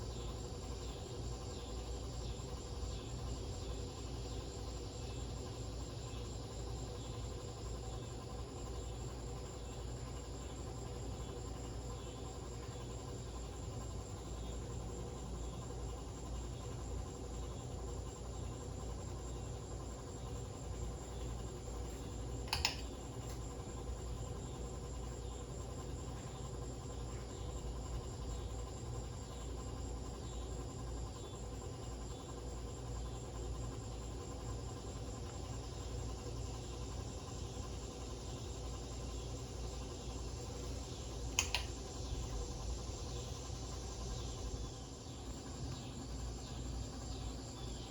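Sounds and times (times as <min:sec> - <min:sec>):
ceiling fan humming: 0:00.0 - 0:47.9
sharp click: 0:22.4 - 0:23.4, 0:41.3 - 0:41.8.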